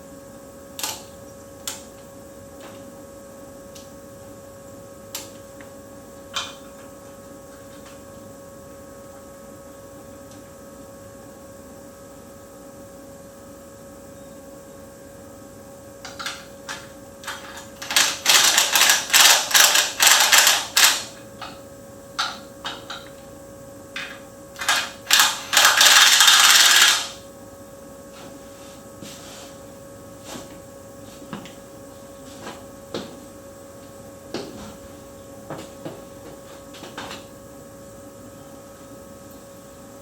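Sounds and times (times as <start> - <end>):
steady hum: 0.0 - 40.0
metal tools clicking and rattling: 24.6 - 27.1.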